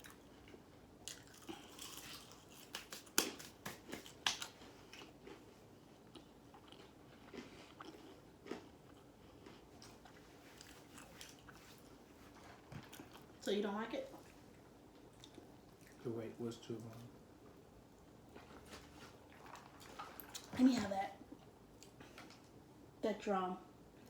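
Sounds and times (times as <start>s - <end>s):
crunching fried chicken: 0.0s - 11.6s.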